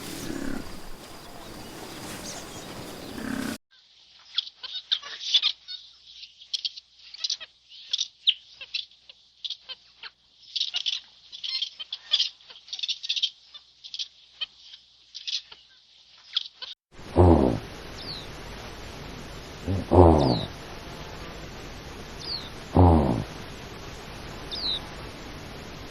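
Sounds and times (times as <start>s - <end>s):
birds chirping and peeping: 0.0s - 3.6s, 22.2s - 23.2s, 24.4s - 25.1s
rough noisy animal sound: 0.0s - 3.6s, 17.0s - 25.9s.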